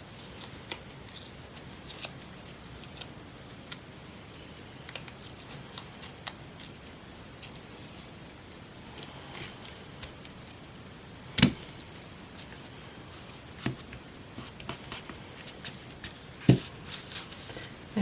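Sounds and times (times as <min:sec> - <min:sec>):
paper rustling: 0:13.6 - 0:17.8.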